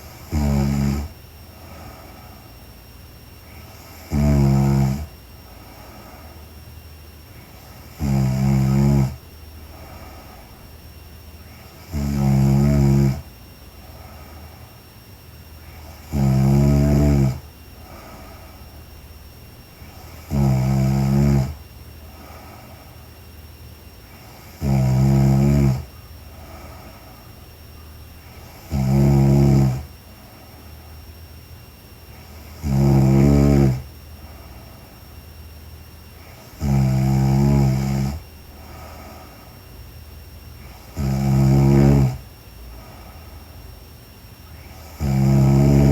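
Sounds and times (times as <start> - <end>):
woman snoring: 0.0 - 2.2, 3.5 - 5.1, 7.6 - 10.4, 11.6 - 13.3, 15.8 - 18.8, 19.8 - 21.6, 24.2 - 27.1, 28.2 - 29.9, 32.2 - 33.9, 36.3 - 39.4, 40.6 - 42.3, 44.5 - 45.9.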